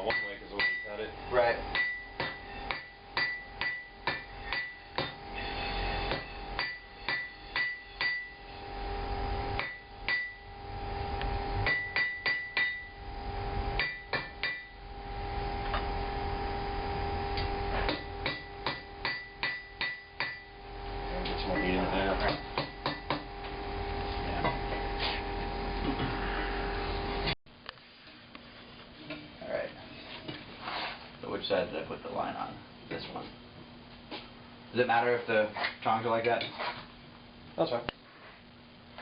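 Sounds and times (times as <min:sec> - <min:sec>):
hammer striking steel on anvil: 0:00.0 - 0:01.0, 0:01.7 - 0:05.3, 0:06.0 - 0:08.4, 0:09.6 - 0:10.5, 0:11.6 - 0:13.0, 0:13.8 - 0:14.8, 0:17.8 - 0:20.5, 0:21.4 - 0:23.3
steady hum: 0:00.0 - 0:39.0.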